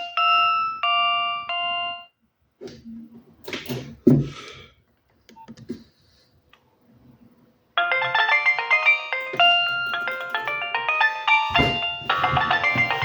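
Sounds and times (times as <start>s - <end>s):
polyphonic phone ringtone: 0.0s - 2.2s, 7.8s - 13.0s.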